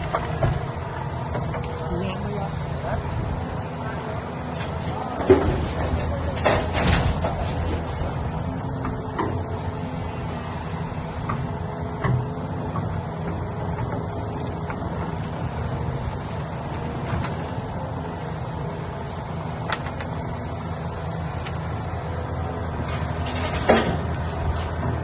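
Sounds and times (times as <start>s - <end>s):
knocks and clanks: 0.0s - 1.7s, 4.6s - 9.5s, 22.8s - 25.0s
heavy machine engine running: 0.0s - 25.0s.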